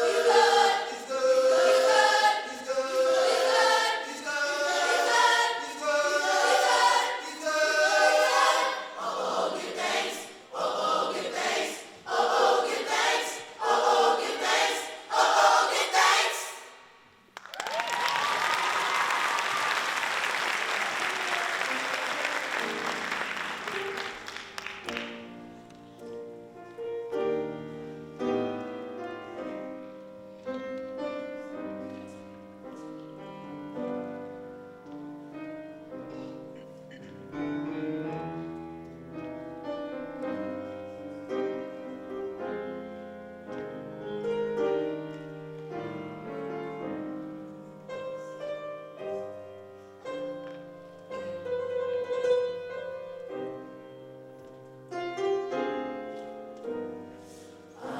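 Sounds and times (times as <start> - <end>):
audience applause: 17.4 - 25.1
slow piano playing: 21.7 - 57.9.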